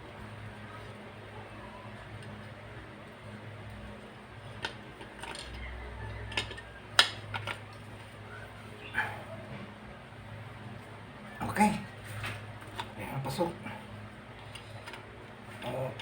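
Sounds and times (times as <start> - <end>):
steady low hum: 0.0 - 16.0
metal tools clinking and knocking: 6.3 - 6.6.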